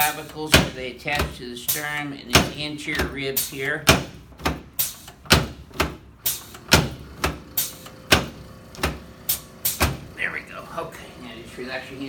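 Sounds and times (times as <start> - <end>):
sharp knocks of chiropractic adjusting: 0.4 - 10.0.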